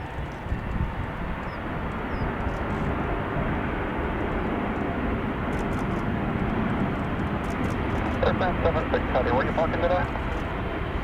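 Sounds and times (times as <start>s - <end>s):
jet airliner engines rushing: 0.0s - 11.0s.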